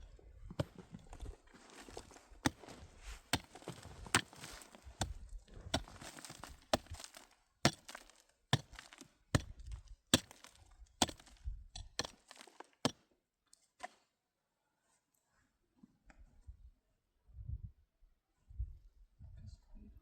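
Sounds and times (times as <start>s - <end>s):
tool chopping hard material: 2.4s - 13.0s.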